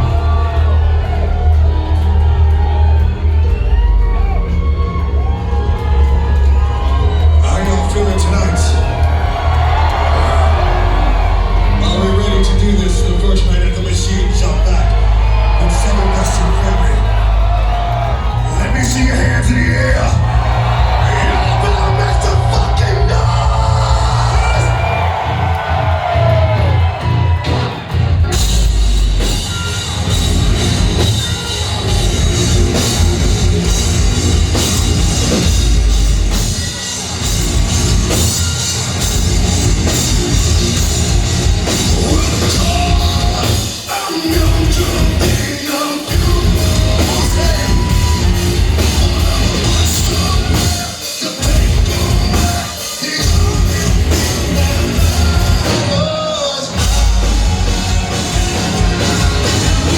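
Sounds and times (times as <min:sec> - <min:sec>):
heavy metal band playing live: 0:00.0 - 0:59.9.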